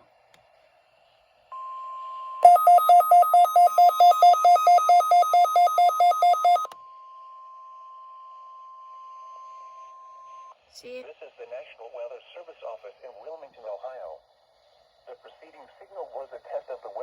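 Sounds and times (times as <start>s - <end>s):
rapid pulsing electronic beeps: 2.4s - 6.7s
steady high alarm tone: 2.4s - 6.7s.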